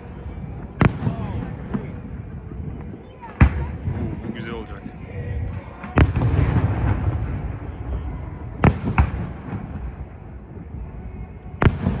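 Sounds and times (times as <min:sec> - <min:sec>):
fireworks bangs: 0:00.6 - 0:02.4, 0:05.6 - 0:10.4, 0:11.6 - 0:12.0.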